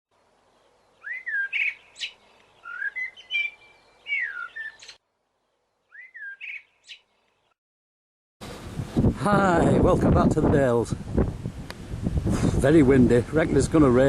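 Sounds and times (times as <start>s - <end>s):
bird high chips: 1.0s - 5.0s, 5.9s - 7.0s
songbird singing whistled phrases: 1.0s - 5.0s, 5.9s - 7.0s.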